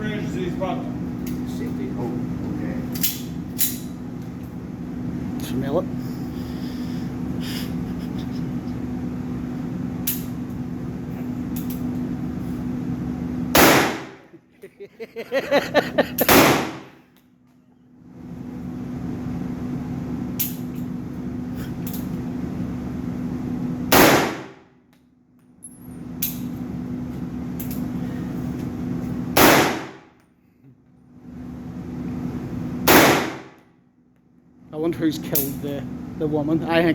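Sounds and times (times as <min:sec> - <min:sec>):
steady hum: 0:00.0 - 0:36.9
loud gunshots: 0:13.5 - 0:14.2, 0:16.3 - 0:16.9, 0:23.9 - 0:24.6, 0:29.4 - 0:30.0, 0:32.8 - 0:33.6
rapid sharp gun cracks: 0:13.6 - 0:14.2, 0:16.2 - 0:17.0, 0:23.9 - 0:24.6, 0:29.4 - 0:30.1, 0:32.9 - 0:33.6.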